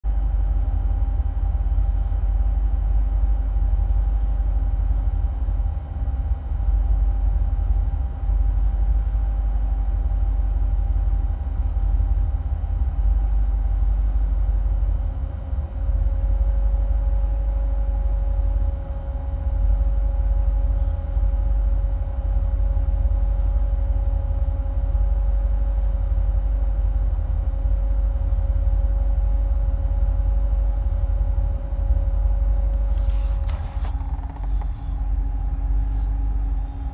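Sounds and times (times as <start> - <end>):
faint steady whine: 0.1 - 36.9
car engine idling roughly: 32.8 - 36.9.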